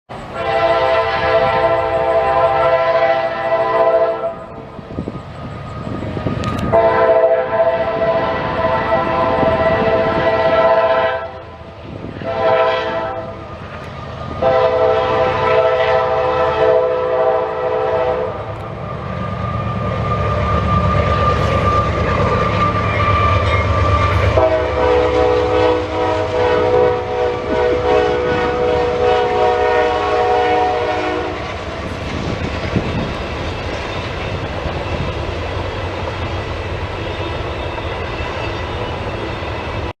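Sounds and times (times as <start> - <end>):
train horn blasts: 0.1 - 5.2, 6.2 - 19.1, 19.8 - 33.1
locomotives rumbling past: 0.1 - 39.9.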